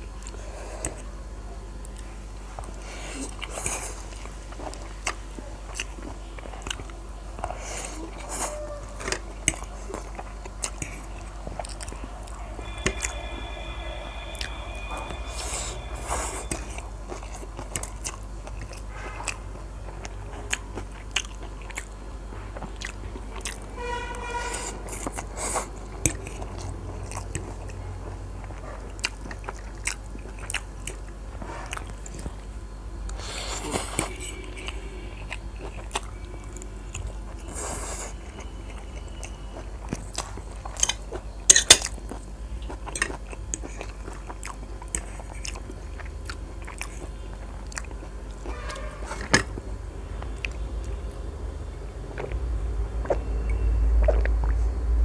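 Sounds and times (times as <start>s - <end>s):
person chewing and crunching food: 0.0s - 1.2s, 1.8s - 51.2s, 51.8s - 55.0s
steady low hum: 0.0s - 55.0s
brief pitched tone: 12.4s - 17.0s.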